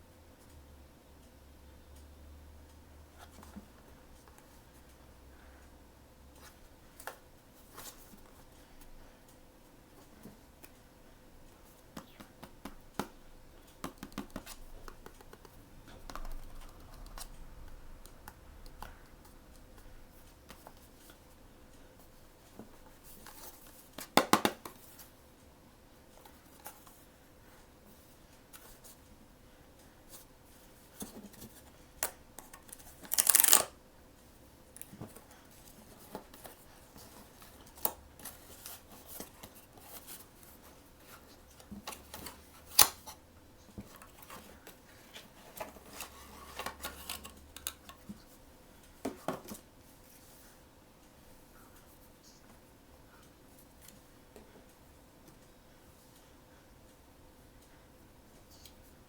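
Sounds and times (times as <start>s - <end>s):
paper and plastic rustling: 32.6s - 33.7s.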